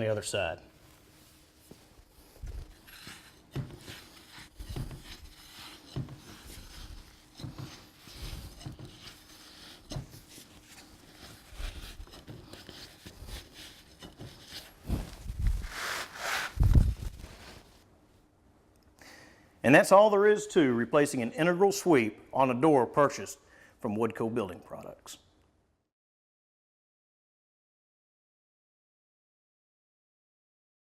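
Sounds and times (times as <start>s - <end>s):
rubbing against wood: 2.3s - 17.6s.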